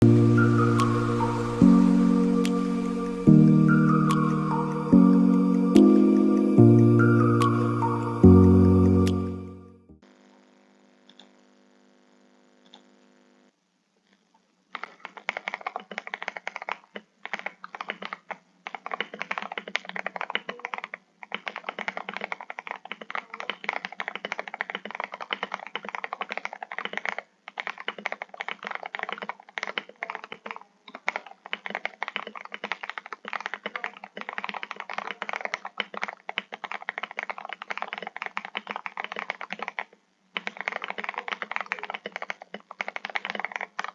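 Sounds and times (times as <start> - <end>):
soft music: 0.0 - 10.0
mechanical keyboard typing: 14.8 - 43.9.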